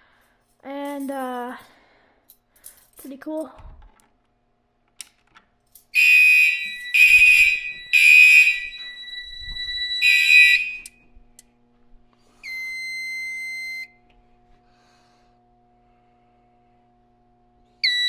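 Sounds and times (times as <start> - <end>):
fire alarm horn blasts: 6.0 - 11.0, 12.4 - 14.0, 17.8 - 18.0.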